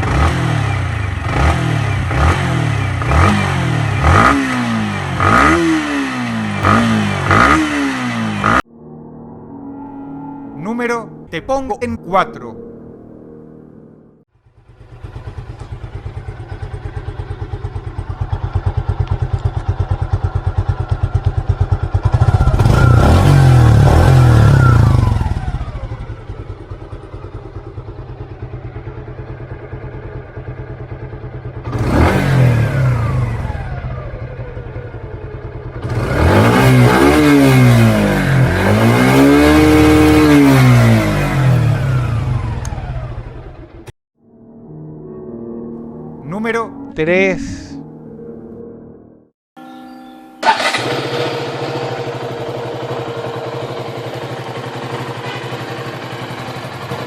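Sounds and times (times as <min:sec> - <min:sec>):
motorcycle engine idling and revving: 0:00.0 - 0:08.7, 0:14.3 - 0:44.0, 0:50.4 - 0:57.0.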